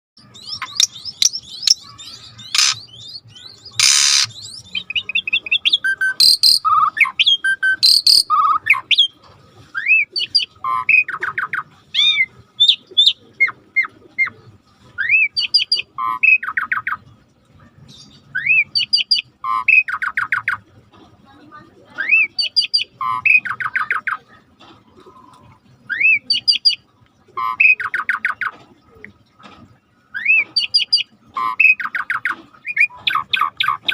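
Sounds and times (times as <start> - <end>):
bird harsh rasping calls: 0.2 - 8.8
starling whistled song: 0.4 - 9.1, 9.8 - 14.3, 15.0 - 17.0, 18.3 - 20.6, 22.0 - 24.0, 25.9 - 26.8, 27.4 - 28.5, 30.1 - 33.9.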